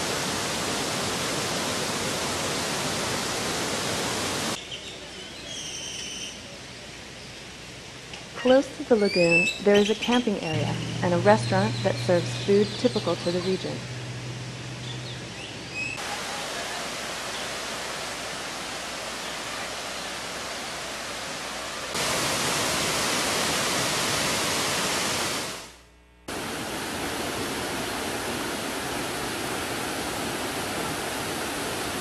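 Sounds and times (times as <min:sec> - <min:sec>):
waterfall roaring: 0:00.0 - 0:04.6, 0:16.0 - 0:25.6, 0:26.3 - 0:32.0.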